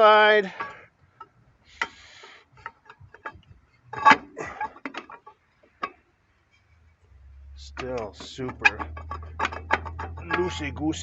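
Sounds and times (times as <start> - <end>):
metallic clicks and knocks: 2.6 - 6.0, 7.5 - 11.0.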